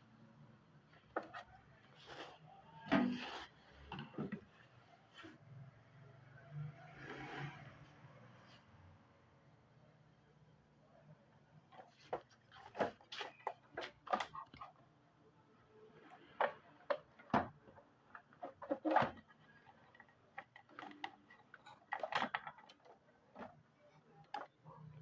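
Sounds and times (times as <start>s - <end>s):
computer parts clicking and knocking: 12.0s - 14.8s, 16.1s - 25.0s.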